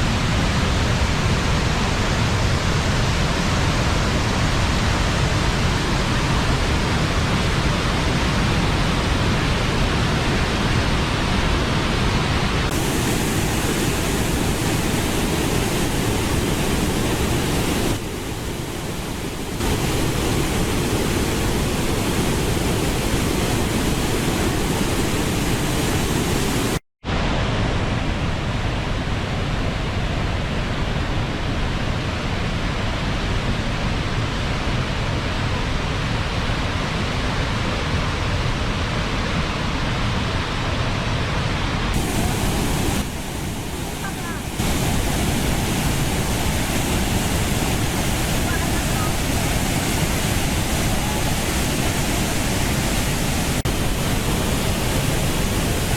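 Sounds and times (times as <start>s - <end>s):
waterfall pouring: 12.7s - 18.0s.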